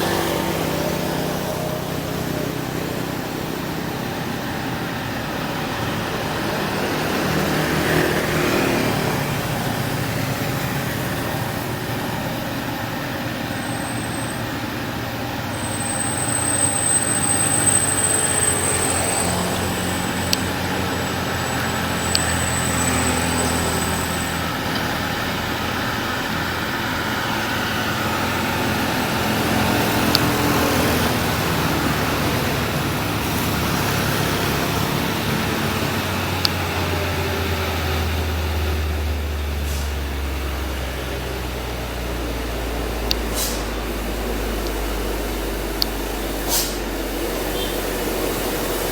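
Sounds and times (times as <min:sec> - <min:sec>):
heavy truck diesel engines: 0:00.0 - 0:48.9
thin high whistle: 0:13.5 - 0:14.7, 0:15.6 - 0:24.6
sharp clicks: 0:30.0 - 0:30.4.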